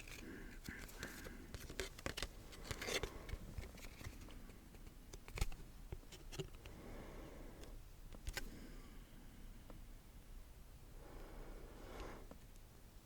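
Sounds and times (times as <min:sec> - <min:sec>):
cards clicking and tapping: 0:00.0 - 0:06.6.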